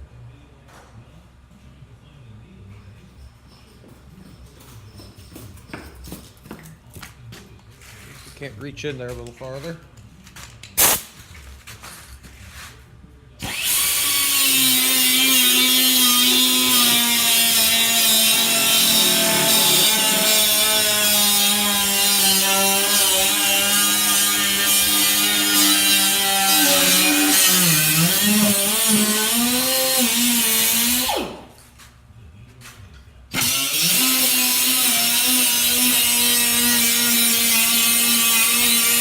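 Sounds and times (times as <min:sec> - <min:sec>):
power tool cutting sheet metal: 0:13.4 - 0:31.4, 0:33.3 - 0:39.0.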